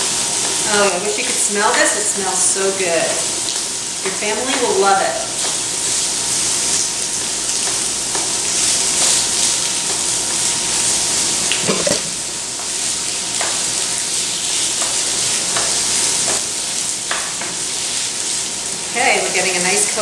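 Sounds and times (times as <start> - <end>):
sausage sizzling in skillet: 0.0 - 20.0
utensil scraping and tapping pan: 11.5 - 12.2.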